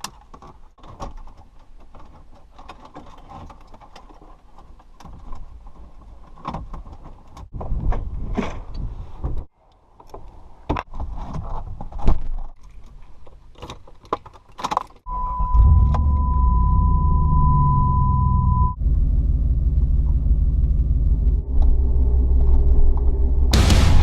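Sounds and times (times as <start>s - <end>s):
high warning tone: 15.1s - 18.8s
car engine starting and running: 15.1s - 24.0s.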